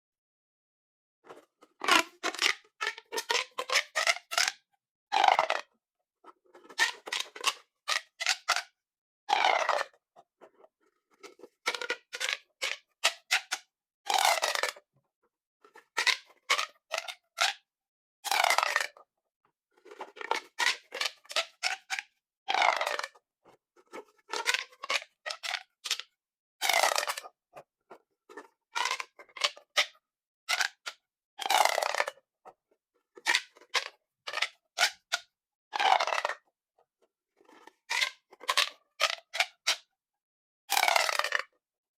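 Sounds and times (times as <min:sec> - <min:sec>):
plastic pop tubes crackling: 0:28.8 - 0:32.1, 0:35.8 - 0:36.3.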